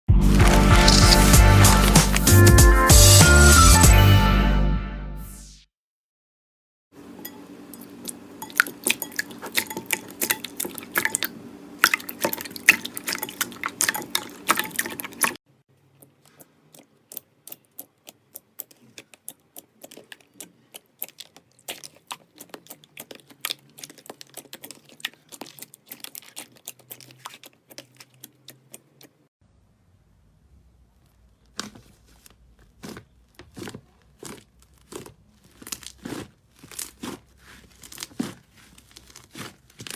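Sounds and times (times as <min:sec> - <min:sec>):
slime squeezed by hand: 0:00.2 - 0:02.5, 0:31.5 - 0:39.9.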